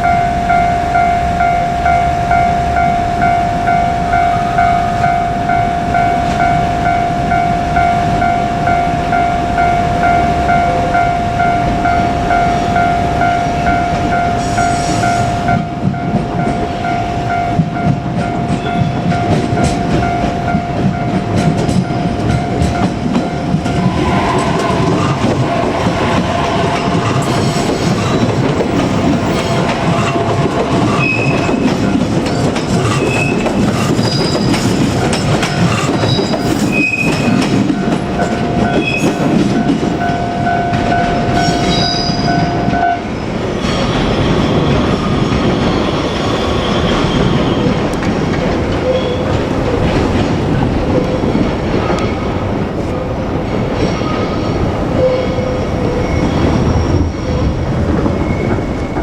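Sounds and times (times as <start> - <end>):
steady whine: 0.0 - 32.7
train rail rumble: 0.0 - 59.0
wheels clattering over rail joints: 15.8 - 59.0
wheel squeals: 23.6 - 42.9, 43.5 - 50.1, 53.8 - 59.0.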